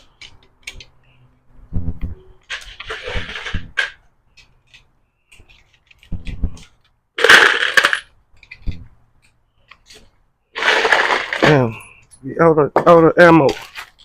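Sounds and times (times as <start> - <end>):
cartridges clicking and clinking: 6.7 - 9.4
rattle of rounds: 7.2 - 8.8, 10.6 - 11.8.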